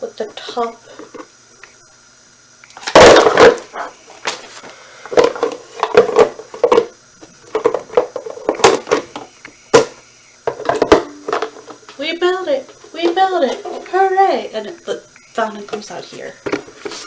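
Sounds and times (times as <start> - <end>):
plastic parts clattering: 2.8 - 9.9
plastic parts knocking and clicking: 5.1 - 11.8.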